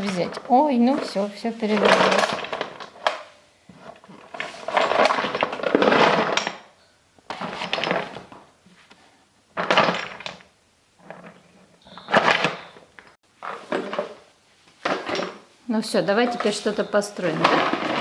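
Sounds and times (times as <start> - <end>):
toy blocks clattering: 0.0 - 3.2, 4.2 - 6.7, 16.1 - 18.0.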